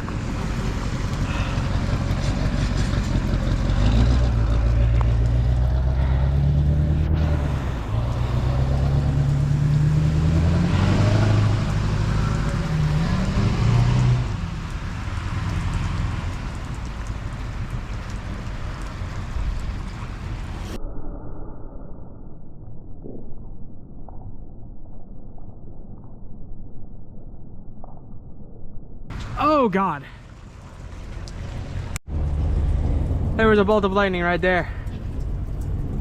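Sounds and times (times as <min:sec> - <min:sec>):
vehicle engine running: 0:00.0 - 0:20.6.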